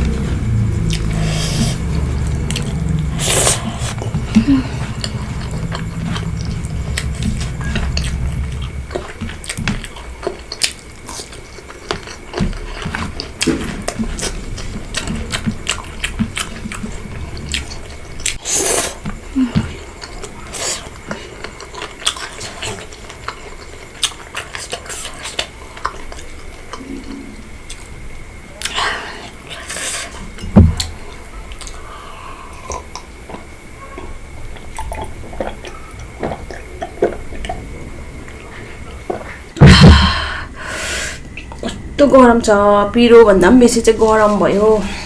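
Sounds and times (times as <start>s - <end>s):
noisy burst: 0.0s - 10.4s, 39.5s - 41.3s
wet chewing and mouth smacks: 34.6s - 37.7s.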